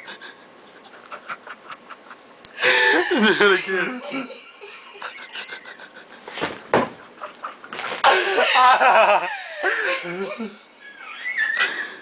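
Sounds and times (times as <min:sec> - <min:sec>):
loud laughter: 0:01.5 - 0:06.1, 0:08.0 - 0:12.0.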